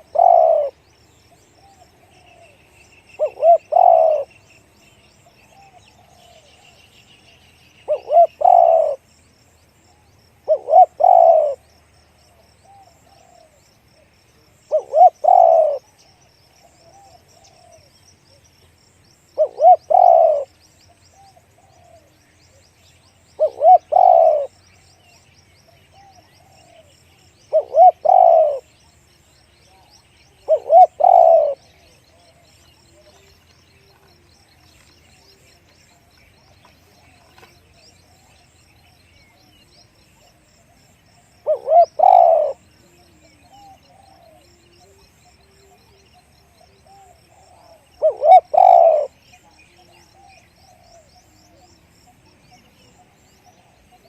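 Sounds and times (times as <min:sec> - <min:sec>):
dove cooing: 0:00.0 - 0:00.8, 0:03.2 - 0:04.4, 0:07.9 - 0:09.1, 0:09.9 - 0:11.6, 0:12.3 - 0:13.6, 0:14.6 - 0:17.9, 0:19.4 - 0:20.5, 0:21.1 - 0:22.1, 0:23.4 - 0:24.6, 0:25.9 - 0:26.9, 0:27.5 - 0:28.7, 0:29.6 - 0:54.0
small birds chirping: 0:00.0 - 0:54.0.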